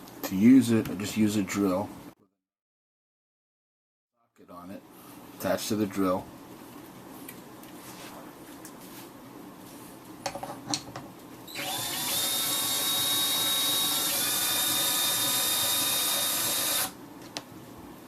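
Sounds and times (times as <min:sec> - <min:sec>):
electric drill running: 0:11.5 - 0:17.0.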